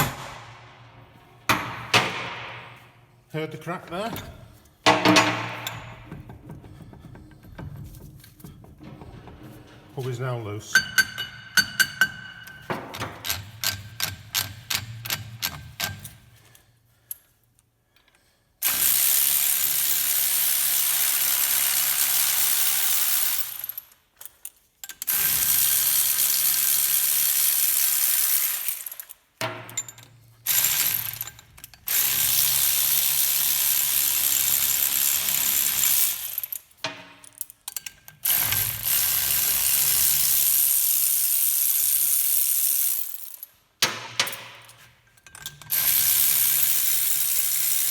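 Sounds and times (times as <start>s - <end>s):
loud whirring power tool: 31.9s - 36.5s, 45.7s - 47.9s.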